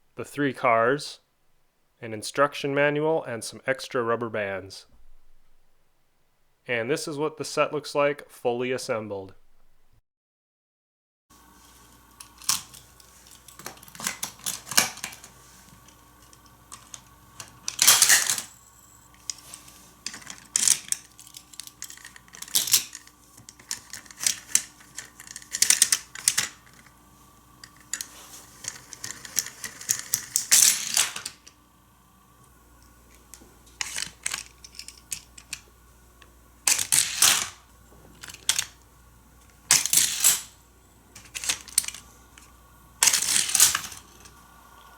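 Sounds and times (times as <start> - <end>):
toy cars clattering on plastic track: 12.2 - 27.0, 27.6 - 31.6, 33.2 - 38.8, 39.4 - 40.6, 41.2 - 44.4.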